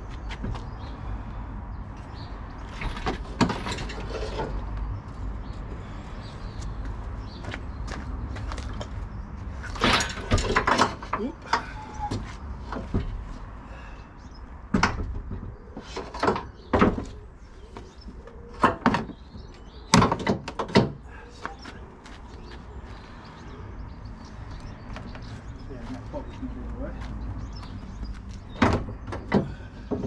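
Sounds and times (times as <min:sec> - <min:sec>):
metal parts and tools clunking: 0:02.6 - 0:04.7, 0:09.6 - 0:13.2.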